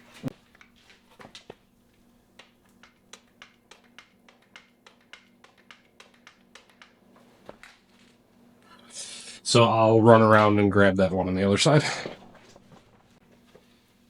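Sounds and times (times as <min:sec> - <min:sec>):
faint steady hum: 0:00.0 - 0:14.0
grease gun clicking: 0:02.4 - 0:07.0.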